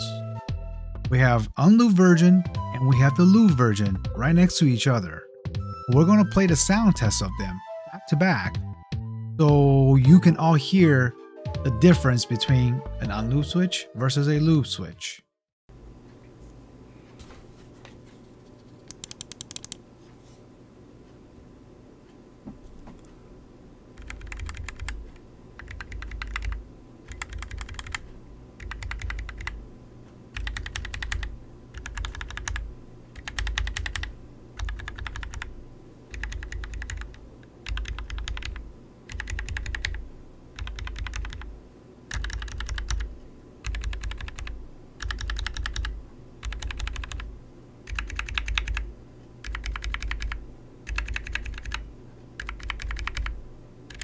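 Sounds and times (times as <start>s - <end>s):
mechanical keyboard typing: 18.9s - 19.8s, 24.0s - 29.6s, 30.3s - 35.5s, 36.1s - 41.5s, 42.1s - 51.8s, 52.4s - 54.0s.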